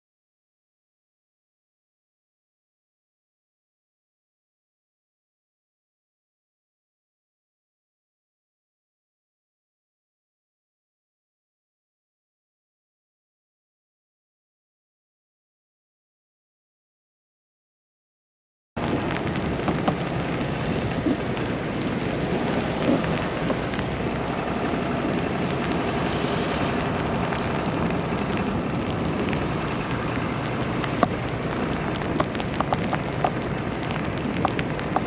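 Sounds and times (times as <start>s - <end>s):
storm hissing: 18.8s - 35.0s
small ticks and clicks: 26.6s - 35.0s.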